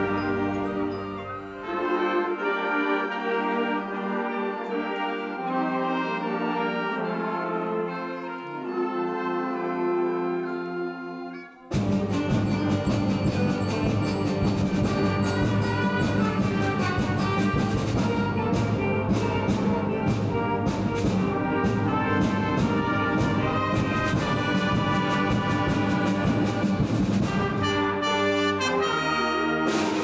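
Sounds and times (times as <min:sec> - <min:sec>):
brass instruments: 0:00.0 - 0:30.0
concert band playing: 0:08.6 - 0:30.0.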